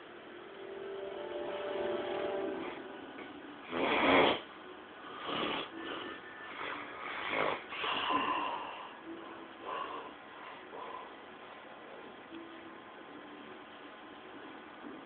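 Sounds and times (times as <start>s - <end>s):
man snoring loudly: 3.7s - 4.4s, 7.1s - 8.3s.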